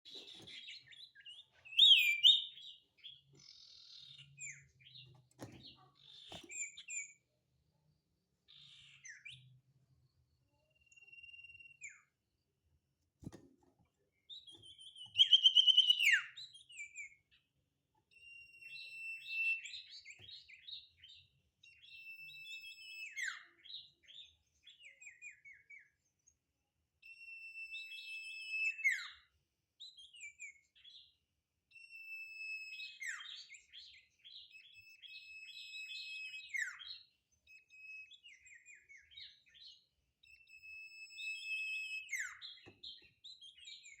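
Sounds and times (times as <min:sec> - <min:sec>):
songbird whistling and chattering: 0:00.1 - 0:05.1, 0:14.3 - 0:17.2, 0:18.2 - 0:25.9, 0:31.8 - 0:44.0.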